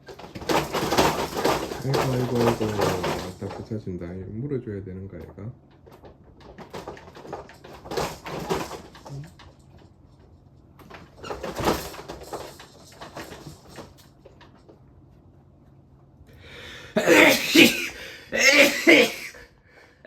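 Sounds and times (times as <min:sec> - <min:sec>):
man sneezing: 0:16.5 - 0:19.6
man coughing: 0:16.6 - 0:19.6.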